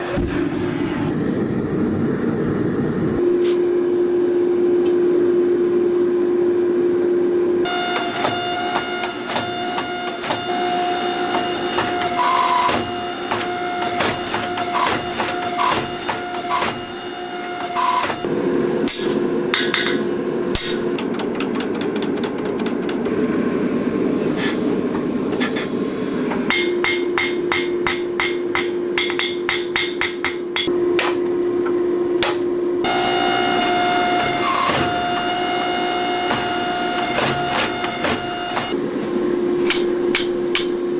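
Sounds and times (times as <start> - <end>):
hammer striking steel on anvil: 18.8 - 21.6, 26.5 - 31.4, 39.6 - 40.8.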